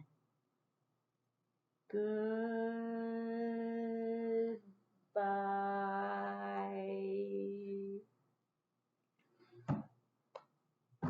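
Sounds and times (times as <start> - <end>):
woman singing slowly: 1.9 - 8.0.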